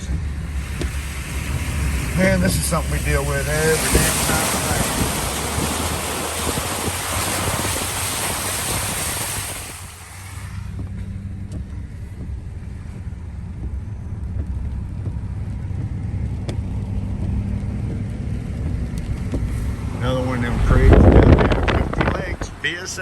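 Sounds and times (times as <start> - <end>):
water sprayed by tyres: 0.0 - 13.9, 14.7 - 23.0
engine and tyres rumbling: 0.0 - 23.0.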